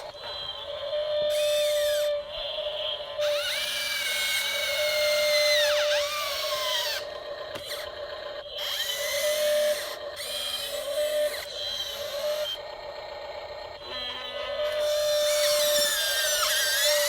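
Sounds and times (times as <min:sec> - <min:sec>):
small electric motors whining: 0:00.0 - 0:17.0
steady high hum: 0:00.0 - 0:17.0.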